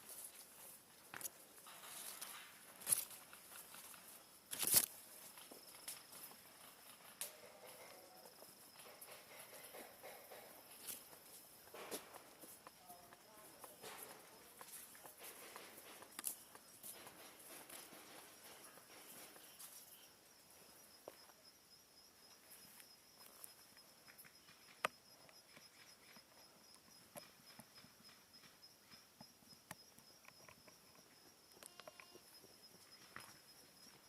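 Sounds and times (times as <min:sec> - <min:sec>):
faint footsteps: 0:00.0 - 0:21.4.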